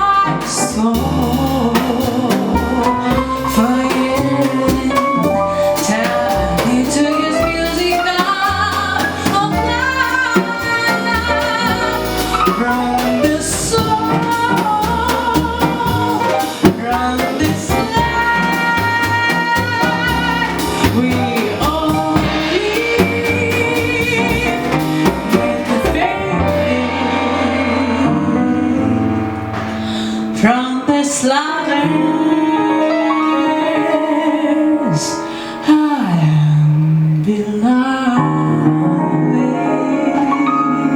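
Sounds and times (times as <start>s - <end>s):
drum kit with cymbals: 0.0s - 31.2s
double bass: 0.0s - 34.1s, 36.0s - 40.9s.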